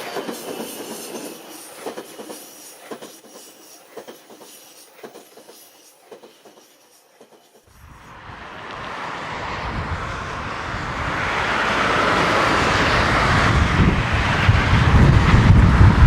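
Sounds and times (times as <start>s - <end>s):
vehicle approaching rumble: 7.8s - 16.0s.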